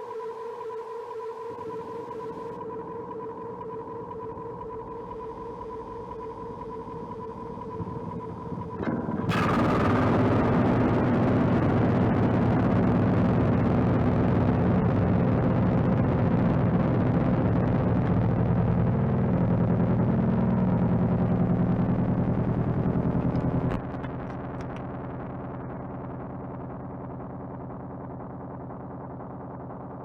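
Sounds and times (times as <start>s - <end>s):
distorted electronic drone: 6.8s - 29.9s.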